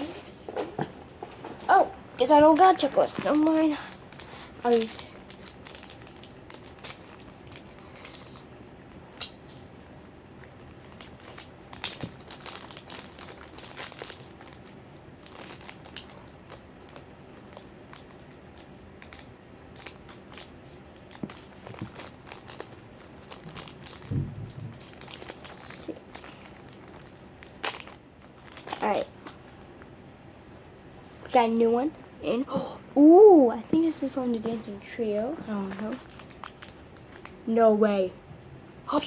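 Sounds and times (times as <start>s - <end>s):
wrappers crinkling and tearing: 1.7s - 29.7s, 35.5s - 37.4s
low thump: 24.1s - 24.7s.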